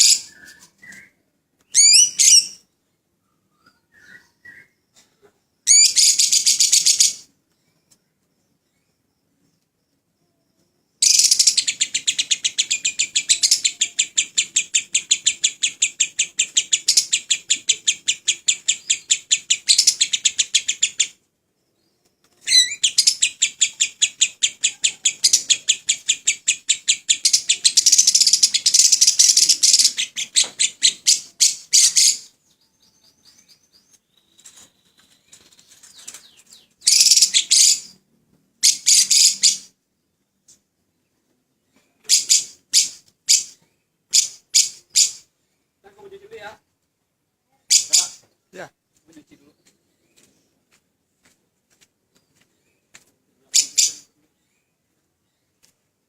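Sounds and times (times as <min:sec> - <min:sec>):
bird rapid high chirps: 0:00.0 - 0:01.1, 0:01.7 - 0:02.6, 0:05.7 - 0:07.3, 0:11.0 - 0:21.2, 0:22.4 - 0:38.0, 0:38.6 - 0:39.8, 0:42.0 - 0:45.3, 0:47.7 - 0:48.3, 0:53.6 - 0:54.1.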